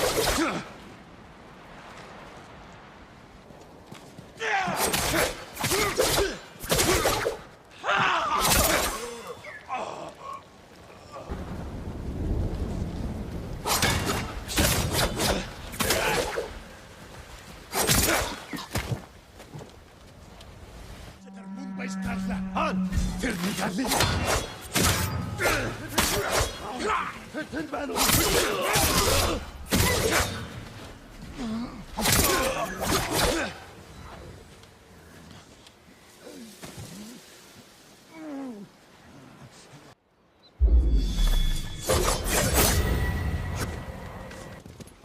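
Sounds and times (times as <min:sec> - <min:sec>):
people grunting and gasping: 0:04.4 - 0:11.5, 0:13.7 - 0:16.6, 0:23.8 - 0:33.9.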